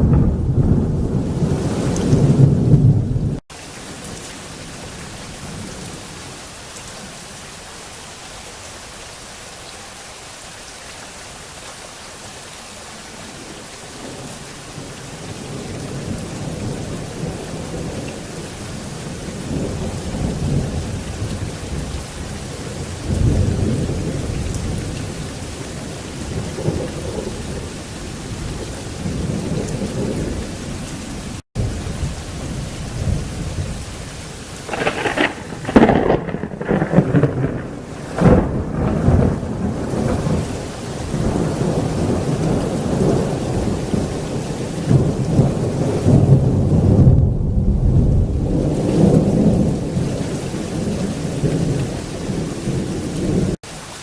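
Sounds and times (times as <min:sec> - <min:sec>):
rolling thunder: 0:00.0 - 0:03.4, 0:14.0 - 0:53.6
heavy rain falling: 0:00.0 - 0:54.0.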